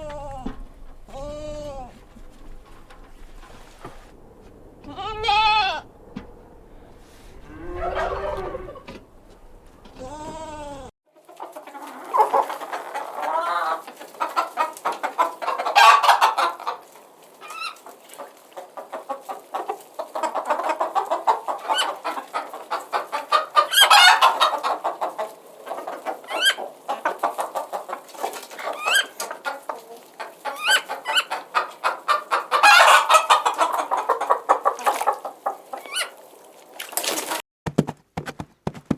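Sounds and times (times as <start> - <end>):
pitched animal calls: 0.0 - 10.9
chickens clucking and squawking: 0.0 - 37.0.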